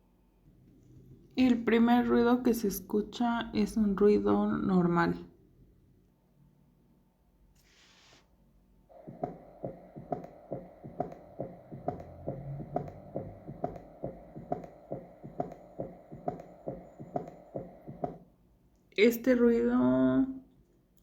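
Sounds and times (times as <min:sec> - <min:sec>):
heartbeat thumps: 0:08.9 - 0:18.3.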